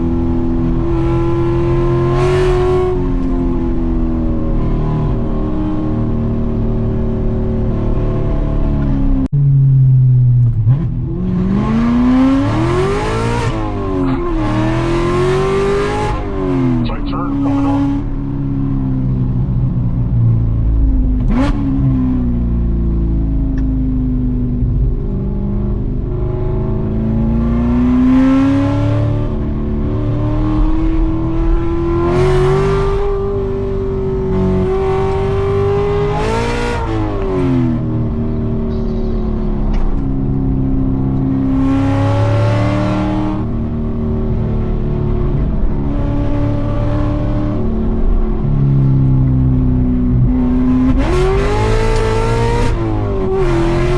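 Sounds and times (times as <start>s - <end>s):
car engine revving hard: 10.7s - 18.3s, 26.6s - 37.9s, 41.4s - 47.7s, 50.3s - 53.9s.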